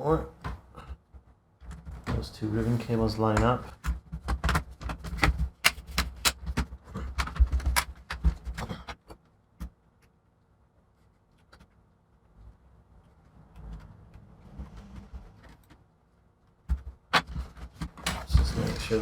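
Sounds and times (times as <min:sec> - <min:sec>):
plastic laptop case clicking: 0:03.8 - 0:09.8.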